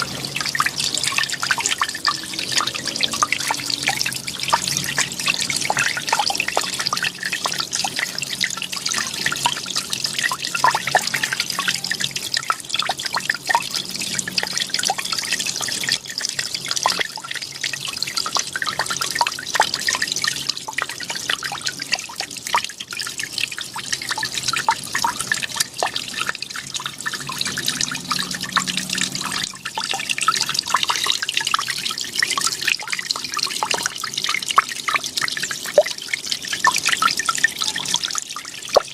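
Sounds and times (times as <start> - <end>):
small water drips: 0.0 - 38.9
waterfall splashing into pond: 0.0 - 38.9.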